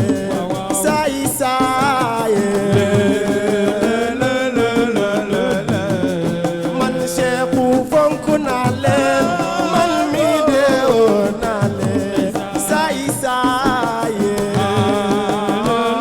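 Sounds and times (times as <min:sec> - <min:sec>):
person singing ornamented melody: 0:02.6 - 0:13.2.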